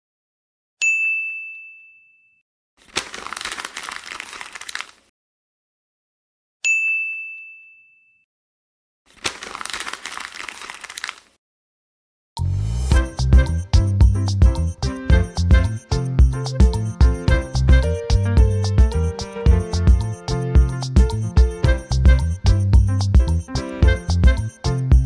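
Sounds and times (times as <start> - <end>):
crackly rustling: 2.8 - 5.0, 9.2 - 11.3
bright bell-like ding: 6.7 - 8.0
music: 12.4 - 25.0.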